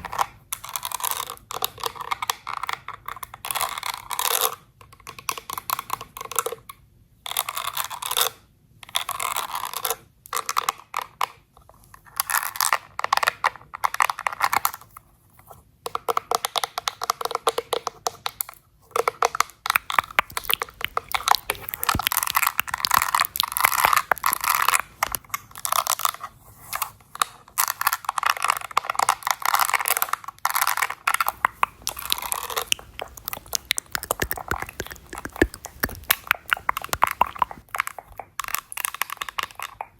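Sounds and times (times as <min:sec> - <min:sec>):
makeup tools crackling and tapping: 0:15.9 - 0:26.2, 0:26.8 - 0:39.9.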